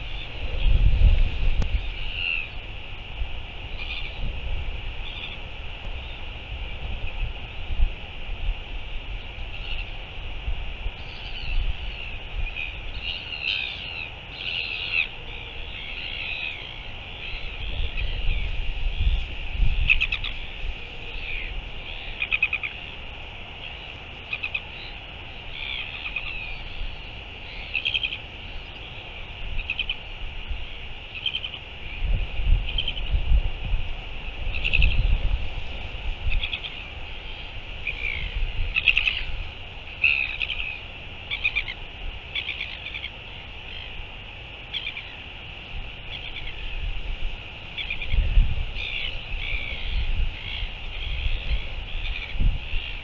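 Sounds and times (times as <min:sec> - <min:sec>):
wind rumbling on microphone: 0:00.0 - 0:53.0
small birds chirping and trilling: 0:01.6 - 0:02.6, 0:03.7 - 0:04.3, 0:09.5 - 0:10.0, 0:11.0 - 0:30.1, 0:31.1 - 0:32.1, 0:32.7 - 0:33.2, 0:34.5 - 0:35.3, 0:36.3 - 0:44.0, 0:44.6 - 0:45.3, 0:46.1 - 0:46.9, 0:47.6 - 0:53.0.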